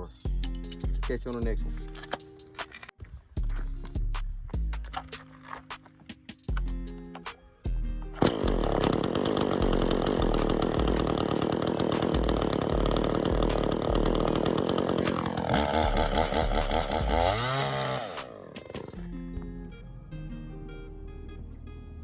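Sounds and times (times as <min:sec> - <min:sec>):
music bass beat: 0:00.0 - 0:01.9, 0:03.3 - 0:05.0, 0:06.2 - 0:08.2
chainsaw running at high revs: 0:08.2 - 0:19.1.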